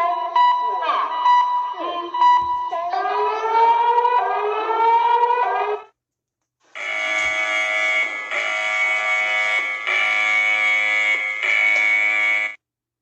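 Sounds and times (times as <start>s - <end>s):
rising alarm tones: 0.0s - 5.9s, 6.8s - 12.6s
harsh multi-tone alarm: 0.0s - 6.0s, 6.8s - 12.6s.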